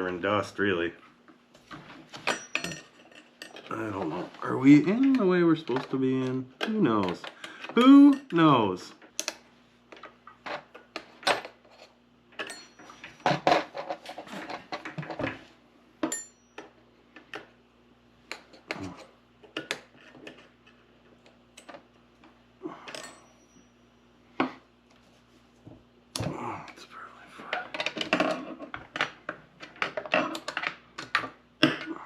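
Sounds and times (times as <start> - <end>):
faint steady hum: 0.0 - 32.0
metallic clinks and knocks: 2.1 - 3.7, 11.3 - 15.3, 16.0 - 16.8, 22.8 - 23.9.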